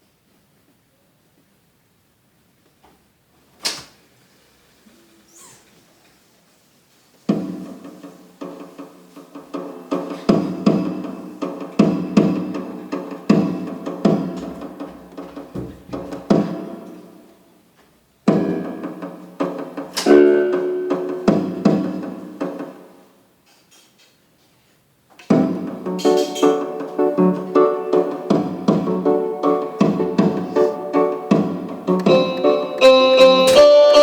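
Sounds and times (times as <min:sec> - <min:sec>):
electronic keyboard melody: 0:19.9 - 0:22.2, 0:25.6 - 0:34.0.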